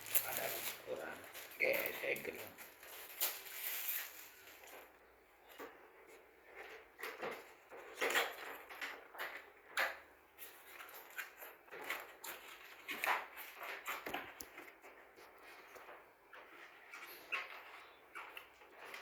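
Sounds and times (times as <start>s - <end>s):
cardboard box rustling and scraping: 0.0s - 4.9s.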